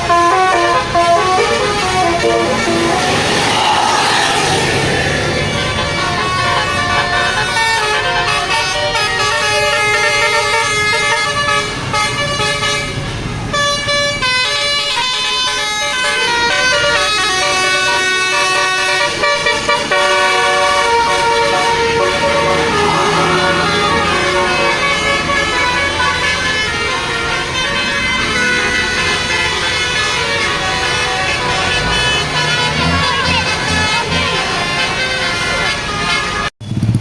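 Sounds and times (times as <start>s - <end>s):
musical bus air horn tune: 0.0s - 3.8s, 4.4s - 36.6s
bus engine hum: 0.0s - 37.0s.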